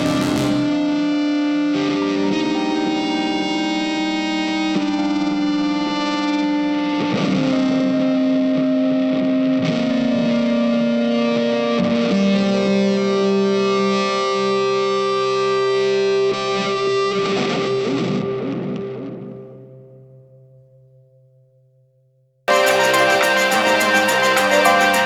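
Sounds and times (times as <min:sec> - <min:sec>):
distorted electric guitar: 0:00.0 - 0:05.3.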